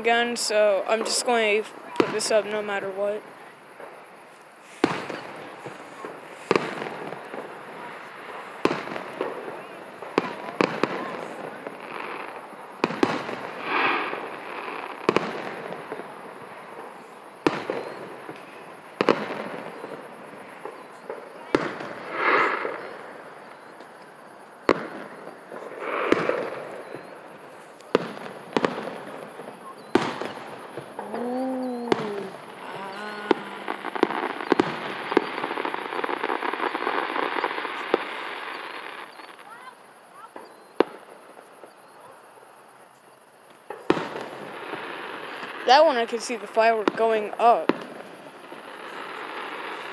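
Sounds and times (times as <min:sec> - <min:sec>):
hissing rush: 0:00.0 - 0:39.5
firework shells booming: 0:00.0 - 0:42.1, 0:43.4 - 0:49.9.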